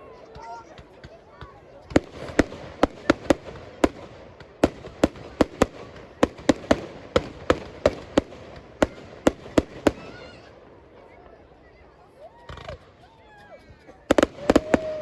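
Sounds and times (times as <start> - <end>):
fireworks bangs: 0.4 - 11.3, 14.0 - 15.0.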